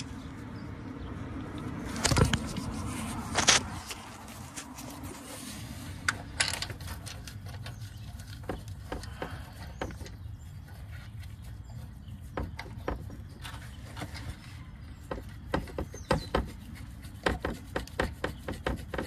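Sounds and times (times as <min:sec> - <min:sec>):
hand tools clicking and knocking: 0:06.0 - 0:10.3.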